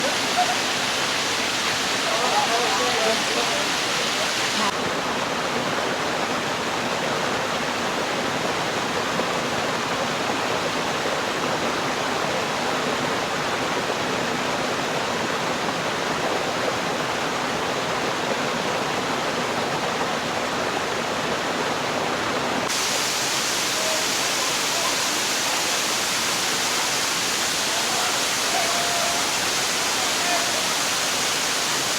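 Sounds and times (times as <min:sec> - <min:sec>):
waterfall rushing: 0:00.0 - 0:31.9.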